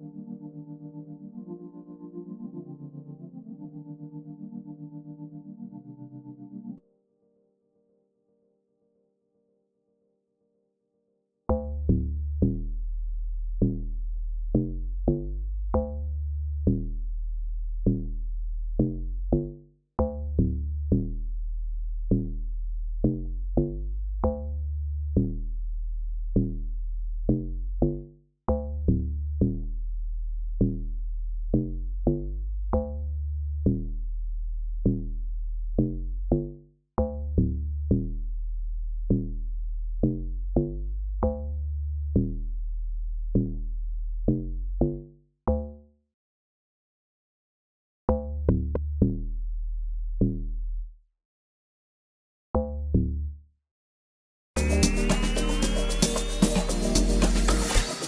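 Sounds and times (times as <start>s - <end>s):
looping dance beat: 54.6s - 58.0s.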